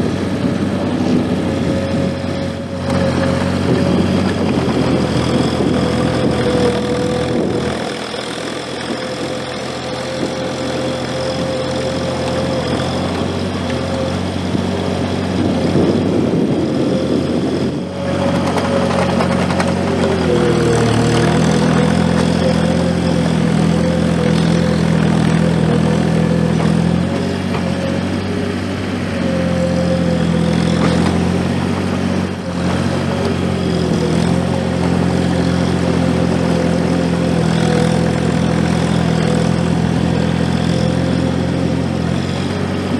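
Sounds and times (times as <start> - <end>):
diesel engine running: 0.0 - 42.9.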